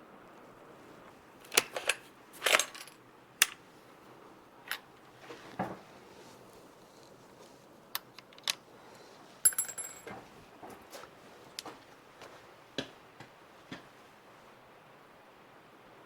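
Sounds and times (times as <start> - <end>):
rifle handling clicks: 1.4 - 3.6, 8.0 - 8.6.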